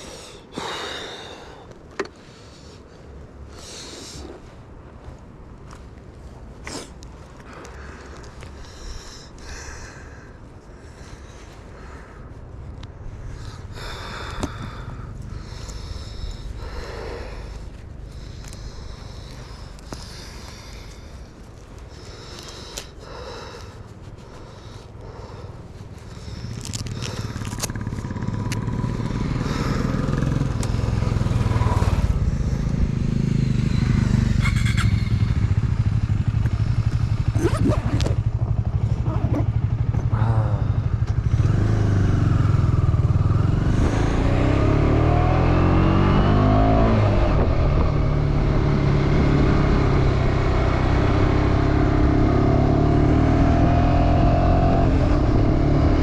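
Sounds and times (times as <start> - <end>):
motorcycle engine accelerating: 26.2 - 56.0.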